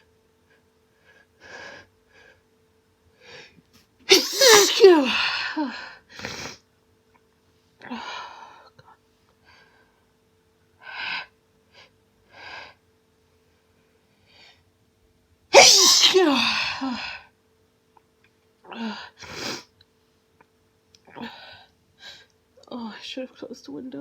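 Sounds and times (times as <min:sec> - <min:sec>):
woman sneezing: 0:04.1 - 0:05.7, 0:15.5 - 0:17.2.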